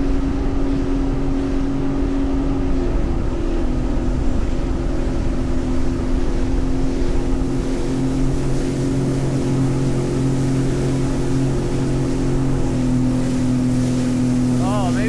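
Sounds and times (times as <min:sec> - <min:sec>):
watercraft engine running: 0:00.0 - 0:15.0
water rushing: 0:00.6 - 0:15.0.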